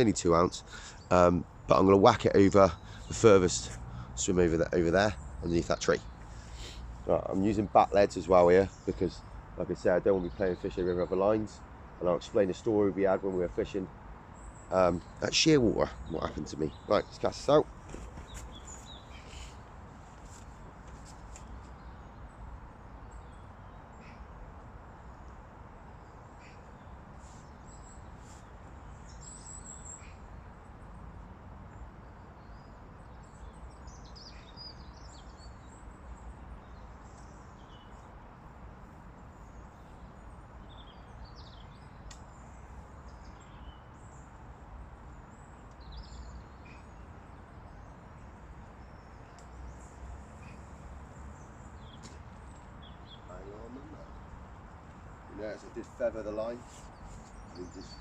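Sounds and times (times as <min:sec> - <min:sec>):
birds chirping and calling: 0:00.0 - 0:22.4, 0:38.8 - 0:58.0
outdoor background hiss: 0:00.0 - 0:58.0.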